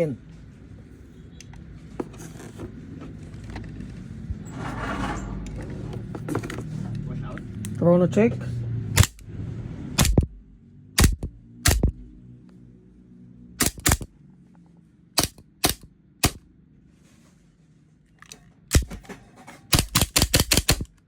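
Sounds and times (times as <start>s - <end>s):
airsoft pistol shots: 10.0s - 10.4s, 11.0s - 12.0s, 13.6s - 14.1s, 15.2s - 16.4s.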